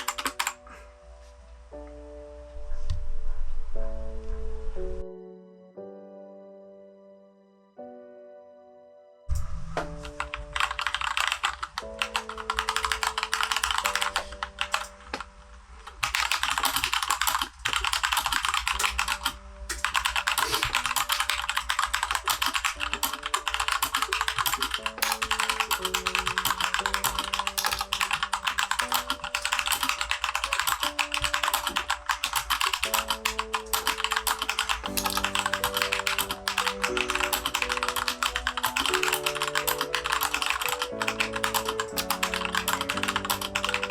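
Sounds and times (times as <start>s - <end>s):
mechanical keyboard typing: 0.0s - 0.6s, 10.0s - 43.9s
soft background music: 0.0s - 43.9s.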